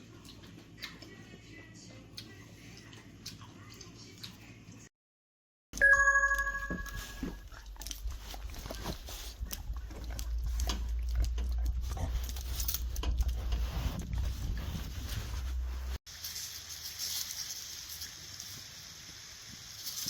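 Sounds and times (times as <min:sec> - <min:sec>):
dog clicking and snuffling: 0:07.4 - 0:14.6
steady low rumble: 0:07.5 - 0:16.0.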